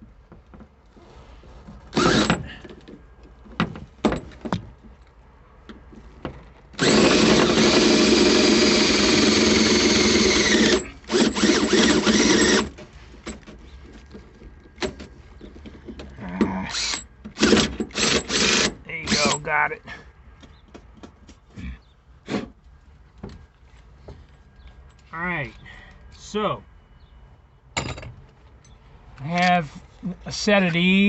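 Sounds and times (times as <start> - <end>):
electric drill boring into metal: 2.0 - 2.4, 6.8 - 12.7, 16.7 - 19.4.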